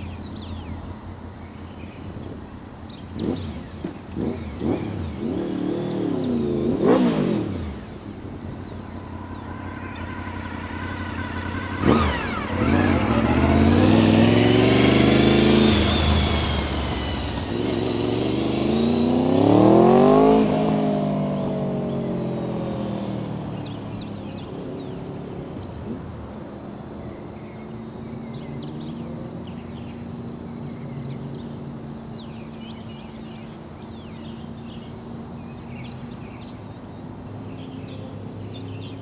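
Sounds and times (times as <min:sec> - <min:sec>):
motorcycle engine revving past: 0:03.0 - 0:26.2.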